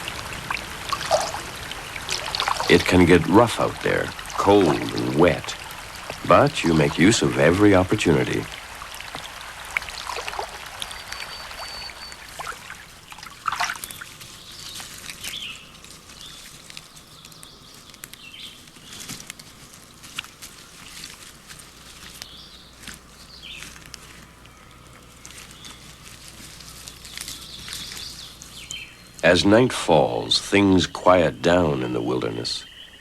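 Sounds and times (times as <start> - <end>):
small drips and splashes: 0.0 - 28.8
water dripping and trickling: 0.0 - 29.3
short bird chirps: 10.8 - 12.3.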